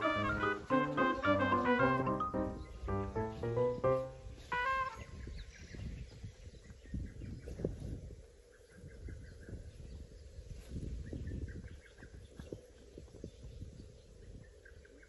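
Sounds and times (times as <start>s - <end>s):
birds chirping: 0.0s - 7.6s.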